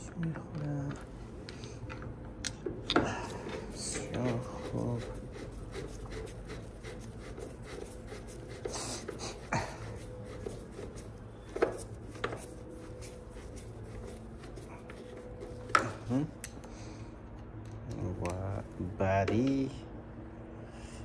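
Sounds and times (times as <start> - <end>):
faint steady hum: 0.0 - 21.0
clicks and knocks of handling parts: 17.3 - 18.6.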